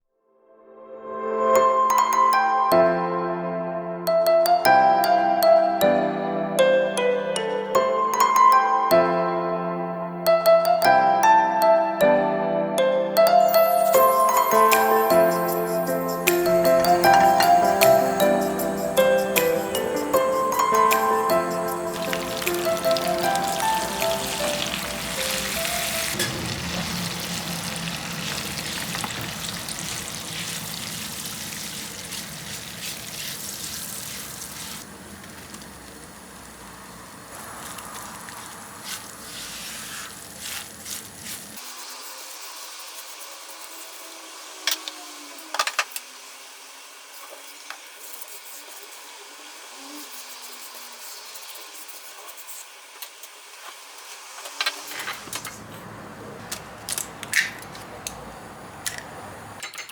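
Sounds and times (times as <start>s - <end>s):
fat sizzling in a frying pan: 21.1s - 43.6s.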